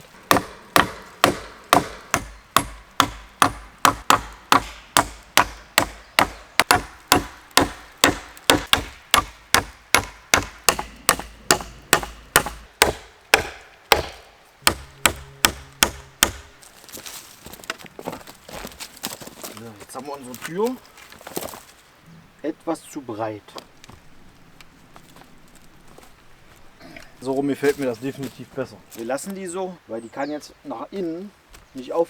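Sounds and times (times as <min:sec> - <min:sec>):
hammering nails into wood: 0:00.3 - 0:16.6.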